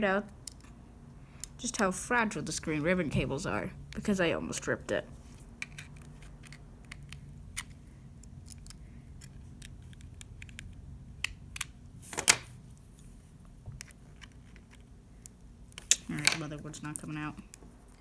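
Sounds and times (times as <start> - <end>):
low steady hum: 0.0 - 18.0
tools clicking on phone parts: 0.3 - 1.9, 5.5 - 12.5.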